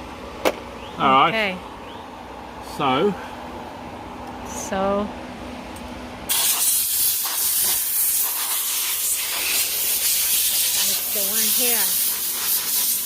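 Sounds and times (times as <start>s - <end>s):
loud steady hiss: 6.3s - 13.0s.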